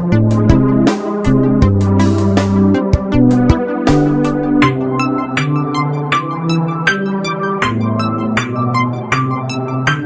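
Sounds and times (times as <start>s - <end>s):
electronic music with synth chords: 0.0s - 10.0s.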